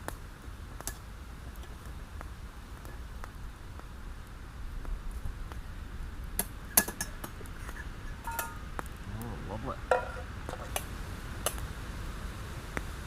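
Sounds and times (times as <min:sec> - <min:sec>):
metal cookware clinking: 0:08.2 - 0:08.6, 0:09.9 - 0:10.3.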